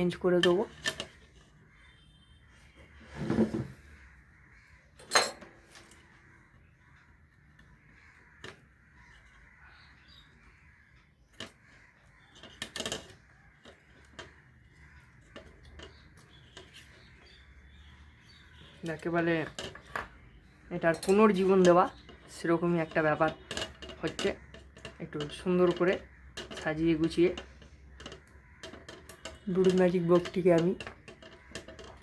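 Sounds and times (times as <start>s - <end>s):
tools clattering on workbench: 5.0s - 5.8s.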